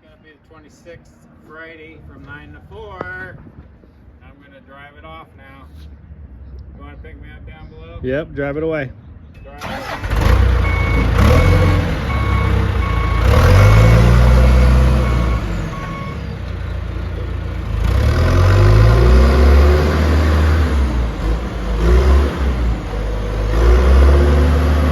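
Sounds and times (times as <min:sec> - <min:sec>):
diesel engine revving: 0:09.6 - 0:24.9
reversing alarm beeping: 0:10.6 - 0:16.5.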